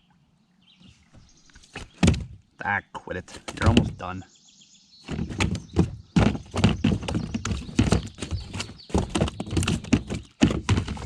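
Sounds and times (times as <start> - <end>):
fish flopping on boat floor: 5.1 - 11.0.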